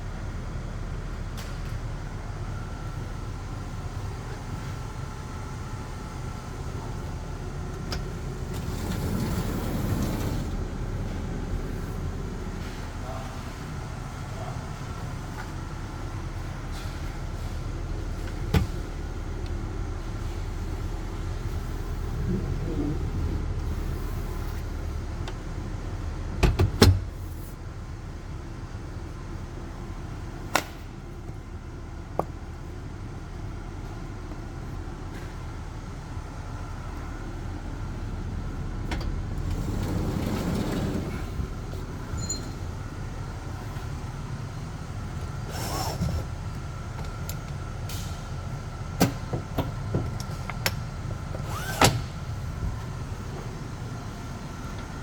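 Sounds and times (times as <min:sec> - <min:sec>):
vehicle rumbling: 0:00.0 - 0:55.0.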